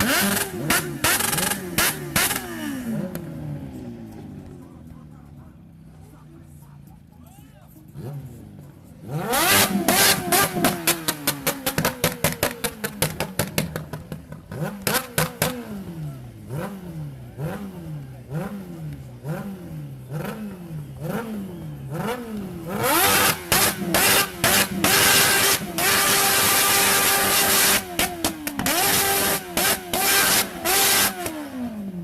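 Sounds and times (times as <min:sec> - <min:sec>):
motorcycle engine revving: 0:00.0 - 0:07.1, 0:07.8 - 0:32.0.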